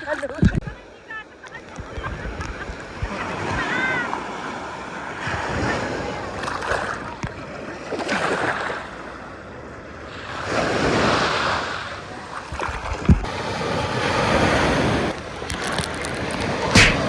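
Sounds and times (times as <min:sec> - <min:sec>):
wind buffeting microphone: 0:00.0 - 0:07.6, 0:12.5 - 0:17.0
sea waves washing: 0:00.0 - 0:17.0
brief thump: 0:16.7 - 0:17.0.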